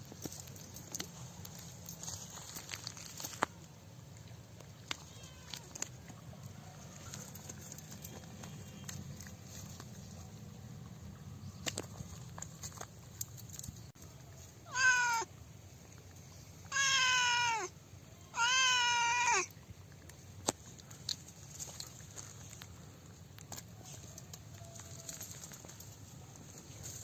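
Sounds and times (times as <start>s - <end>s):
animal crying: 14.7s - 15.3s, 16.7s - 17.7s, 18.3s - 19.5s.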